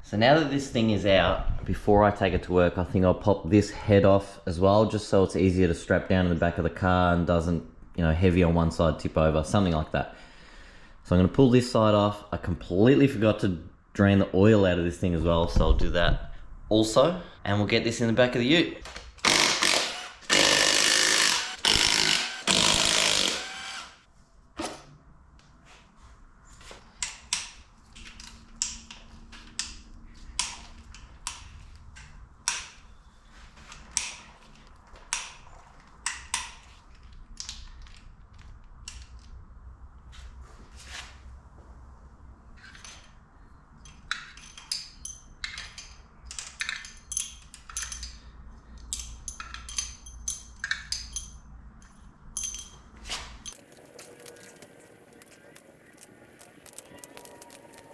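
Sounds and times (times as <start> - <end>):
power tool running in bursts: 19.2 - 24.0.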